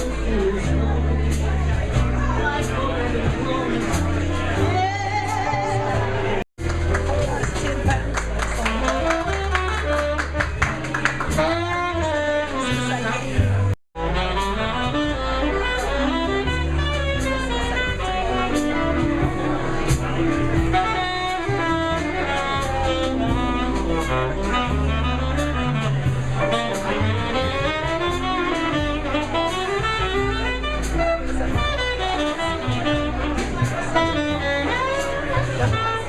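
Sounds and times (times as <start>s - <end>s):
bass line: 0.0s - 36.0s
drums keeping a steady beat: 0.0s - 36.0s
saxophone melody: 8.6s - 36.0s.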